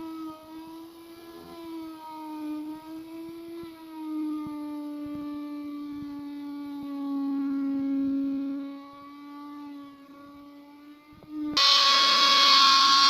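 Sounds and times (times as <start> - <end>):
wood router whining: 0.0 - 13.0
router bit cutting wood: 11.6 - 13.0.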